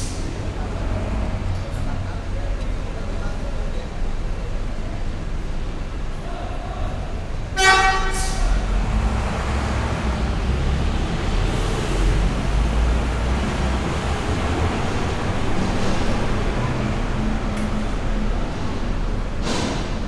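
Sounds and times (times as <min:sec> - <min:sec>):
bus engine running: 0:00.0 - 0:20.0
traffic noise: 0:00.0 - 0:20.0
bus horn toot: 0:07.6 - 0:08.6.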